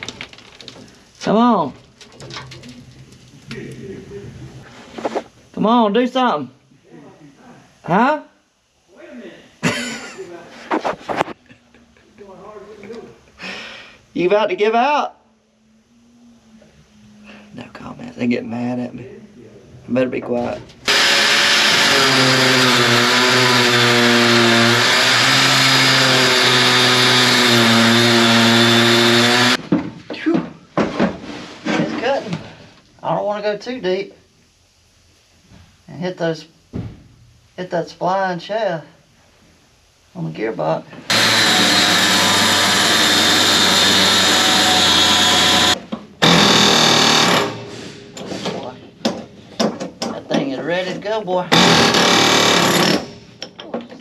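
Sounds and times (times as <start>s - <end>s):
angle grinder cutting metal: 20.9s - 29.6s, 41.1s - 47.6s, 51.5s - 53.2s.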